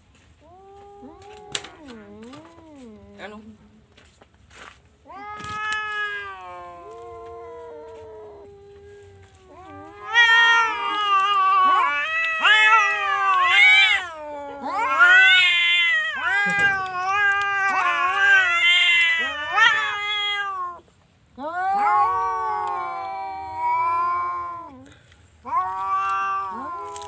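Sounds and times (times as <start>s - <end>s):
cat yowling: 0.4s - 3.4s, 5.0s - 20.8s, 21.4s - 24.8s, 25.4s - 27.0s.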